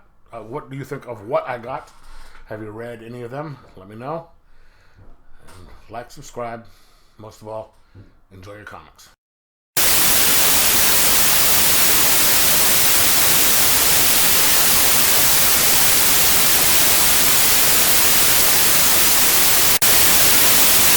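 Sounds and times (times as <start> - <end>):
loud static hiss: 9.8 - 20.9.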